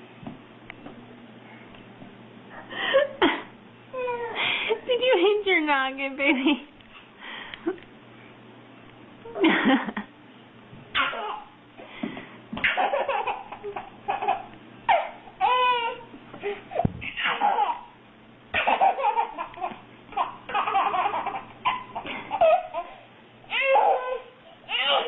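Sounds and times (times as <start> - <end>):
baby laughing: 11.0 - 11.5, 12.6 - 25.0.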